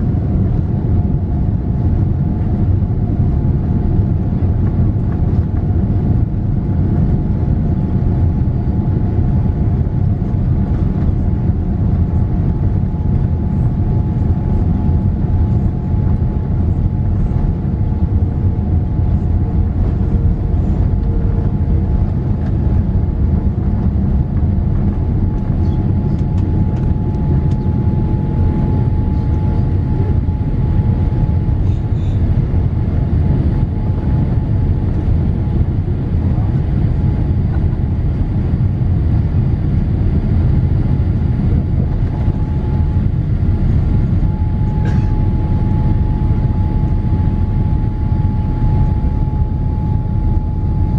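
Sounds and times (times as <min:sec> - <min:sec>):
faint steady whine: 0:00.0 - 0:50.9
jet engine cabin rumble: 0:00.0 - 0:50.9.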